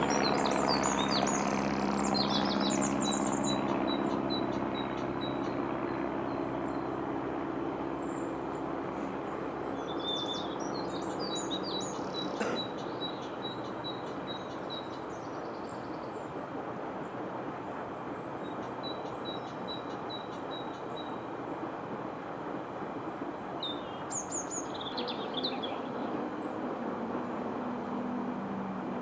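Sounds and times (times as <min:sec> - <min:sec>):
small birds singing: 0:00.0 - 0:07.0, 0:09.3 - 0:16.3, 0:18.4 - 0:21.3, 0:23.4 - 0:26.6
steady rushing noise: 0:00.0 - 0:29.0.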